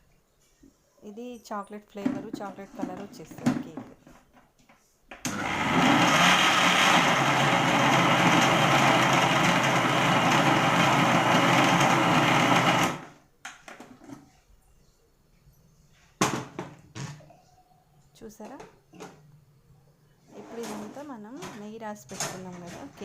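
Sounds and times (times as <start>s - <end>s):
electric blender running: 5.3s - 13.1s.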